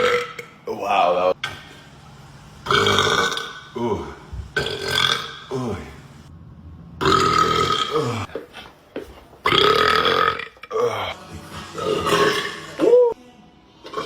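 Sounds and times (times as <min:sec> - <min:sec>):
man belching loudly: 0:00.0 - 0:01.2, 0:02.7 - 0:06.0, 0:07.0 - 0:08.4, 0:09.5 - 0:11.2, 0:11.8 - 0:12.8.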